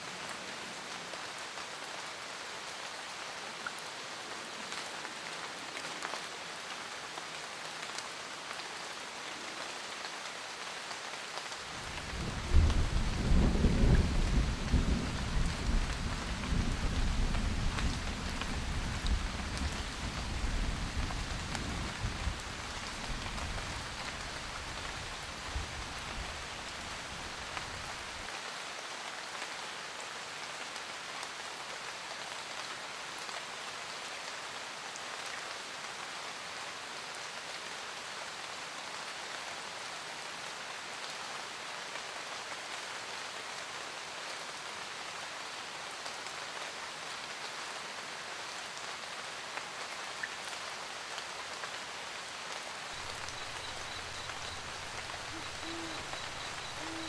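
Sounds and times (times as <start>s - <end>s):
steady rain falling: 0.0s - 57.0s
low thunder rumble: 12.1s - 22.4s, 53.0s - 57.0s.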